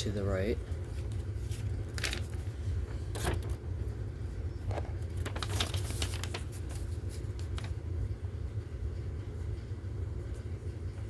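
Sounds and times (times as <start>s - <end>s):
steady low hum: 0.0s - 11.0s
paper rustling and crinkling: 0.9s - 3.6s, 4.7s - 7.8s.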